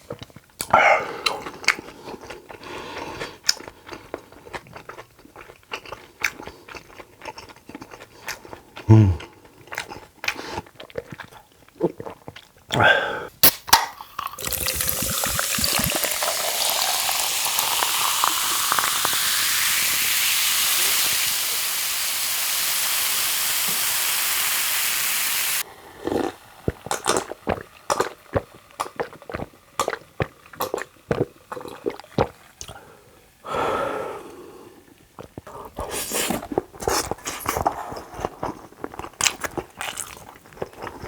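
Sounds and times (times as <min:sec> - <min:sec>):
close chewing sounds: 0:00.0 - 0:12.8, 0:35.0 - 0:41.0
liquid pouring into a container: 0:14.1 - 0:32.8.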